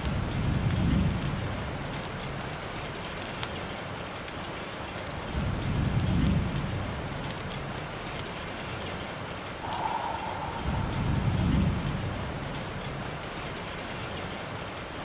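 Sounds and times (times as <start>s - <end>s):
low rumble of thunder: 0.0s - 2.6s, 5.2s - 8.2s, 9.6s - 14.7s
raindrops ticking close by: 0.0s - 15.0s
steady rain falling: 0.0s - 15.0s.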